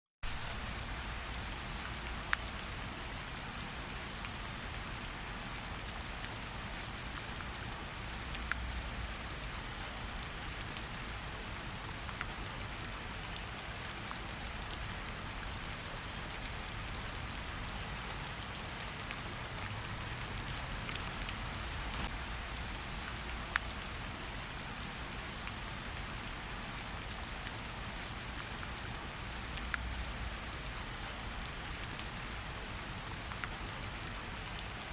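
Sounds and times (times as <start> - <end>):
heavy rain hissing: 13.0 - 34.9.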